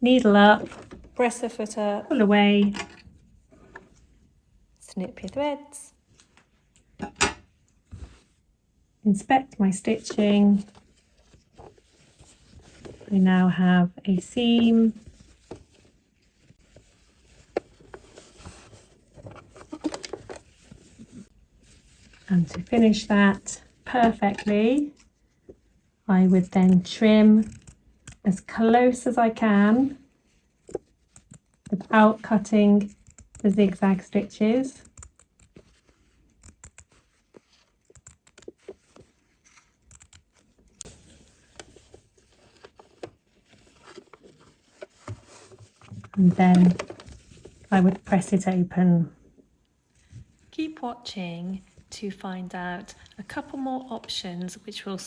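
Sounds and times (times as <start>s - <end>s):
scissors snipping fabric: 36.3s - 37.0s, 37.6s - 38.7s, 39.6s - 40.5s.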